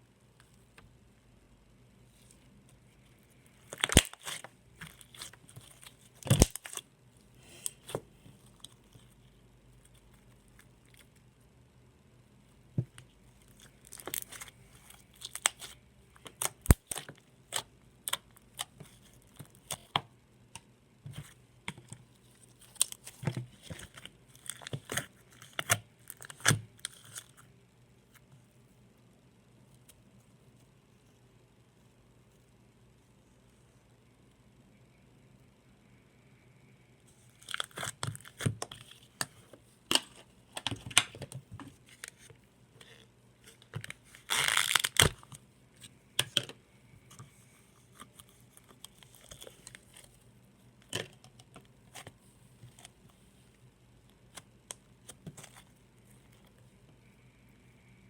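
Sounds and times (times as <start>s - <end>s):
slime popping and crackling: 3.7s - 6.8s, 13.6s - 17.1s.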